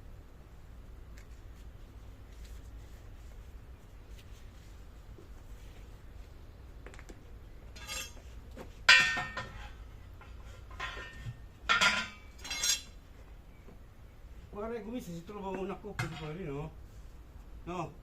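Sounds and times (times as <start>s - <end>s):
metal tools clinking: 7.8s - 8.2s, 10.8s - 13.0s.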